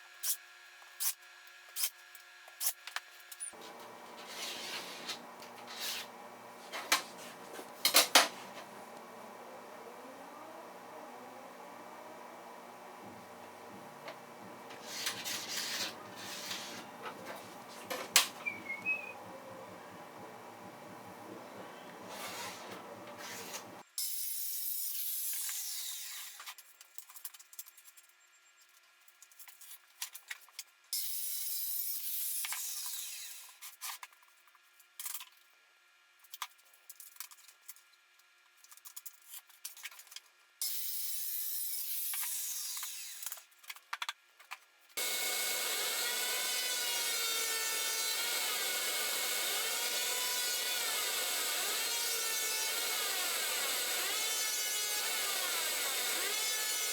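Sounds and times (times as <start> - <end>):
power saw cutting wood: 3.5 - 23.8, 41.8 - 43.3, 45.0 - 56.9.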